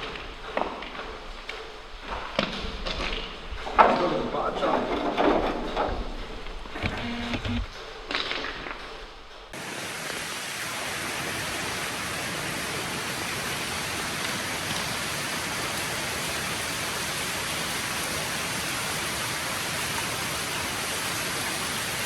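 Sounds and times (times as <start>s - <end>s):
falling water hiss: 9.5s - 22.0s.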